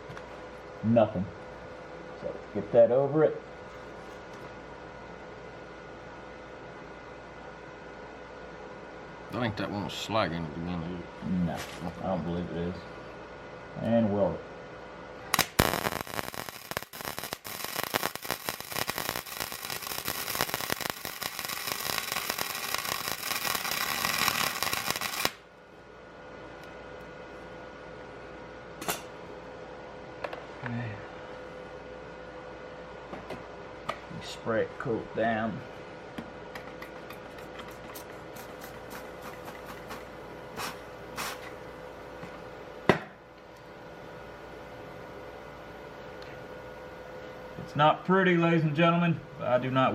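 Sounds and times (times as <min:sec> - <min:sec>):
steady low hum: 0:00.0 - 0:49.9
arc welder crackling: 0:15.2 - 0:25.6, 0:36.5 - 0:42.5.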